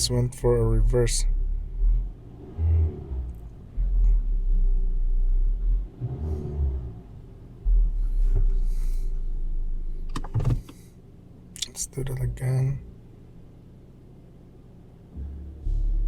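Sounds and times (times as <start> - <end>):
car engine revving: 0.0 - 10.7, 15.0 - 16.0.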